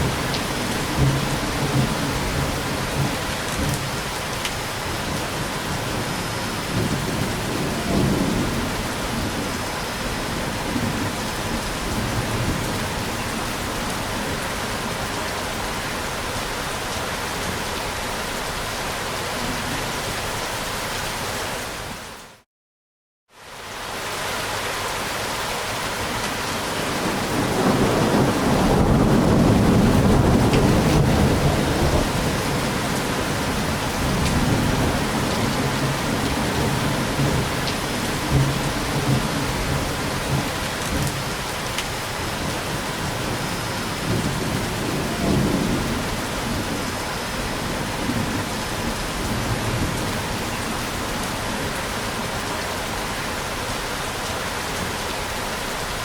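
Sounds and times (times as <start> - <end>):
steady rain: 0.0 - 22.4, 23.3 - 56.0
rolling thunder: 5.0 - 13.2, 26.9 - 41.3, 42.3 - 50.8.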